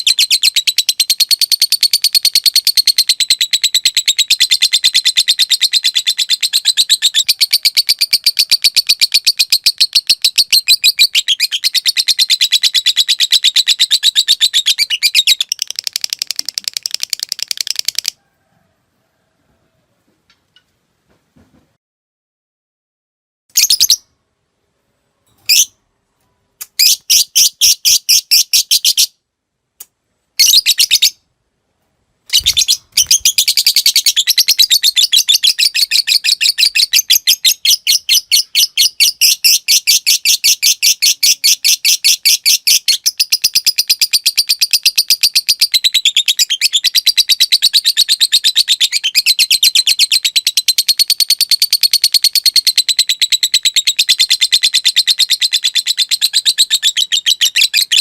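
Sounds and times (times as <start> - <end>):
lovebird chirping trill: 0.0 - 18.2, 32.3 - 58.0.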